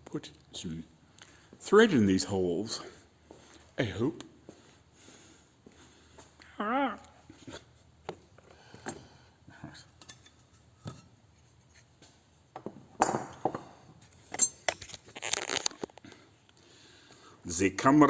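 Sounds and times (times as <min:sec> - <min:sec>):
metal objects clattering: 0:10.0 - 0:11.2, 0:12.6 - 0:15.7.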